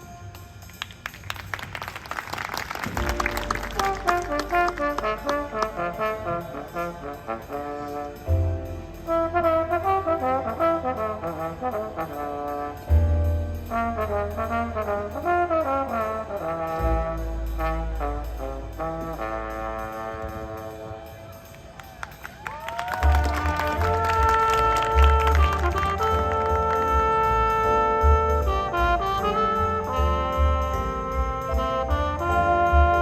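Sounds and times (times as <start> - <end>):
quick percussion strokes: 0.1 - 31.6
marching band playing: 0.6 - 33.0
heavy low accents: 2.7 - 21.2.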